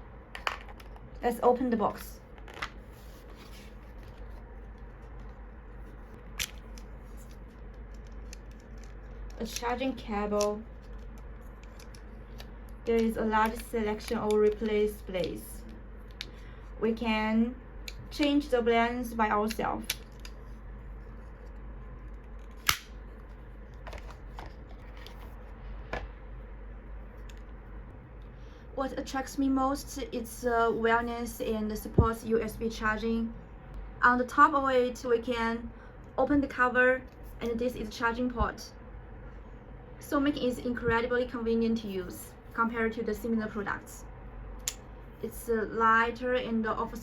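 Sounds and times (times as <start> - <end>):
low steady hum: 0.0 - 47.0
box sliding rustle: 2.8 - 4.4.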